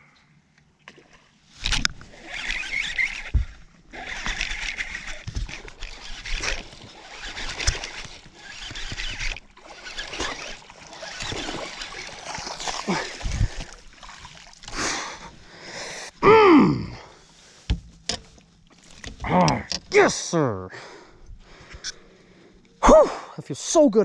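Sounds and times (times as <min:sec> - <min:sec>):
water splashing and sloshing: 0:00.6 - 0:16.2, 0:17.2 - 0:20.0.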